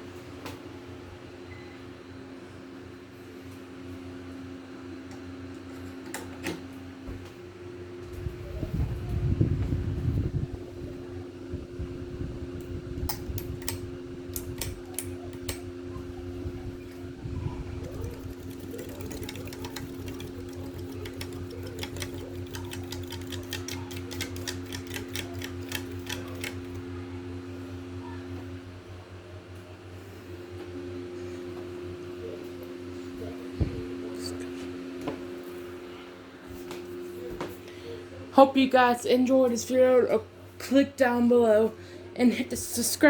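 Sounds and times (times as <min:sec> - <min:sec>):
fan motor hum: 0:00.0 - 0:43.0
whir of moving air: 0:08.0 - 0:20.2, 0:33.2 - 0:34.4.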